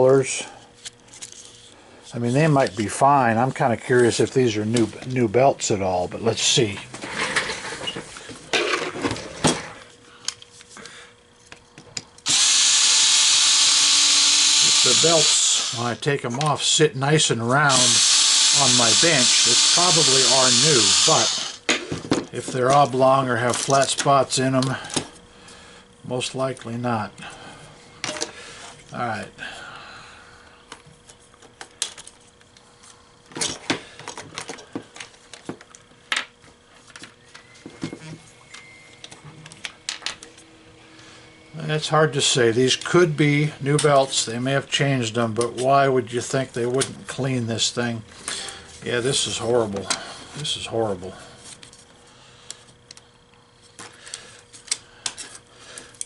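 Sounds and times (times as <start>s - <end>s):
power drill running: 12.2s - 16.0s, 17.5s - 21.7s.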